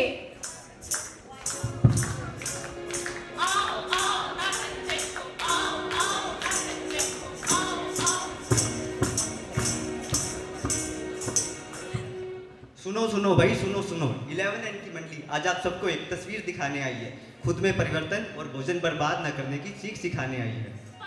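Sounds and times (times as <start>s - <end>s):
jingling tambourine beat: 0.4s - 12.3s
voices singing: 1.3s - 11.7s.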